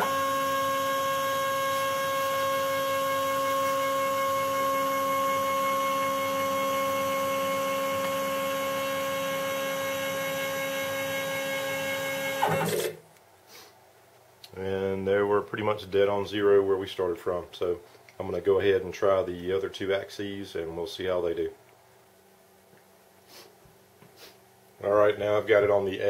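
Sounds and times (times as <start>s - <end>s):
stepper motor whine: 0.0s - 13.0s.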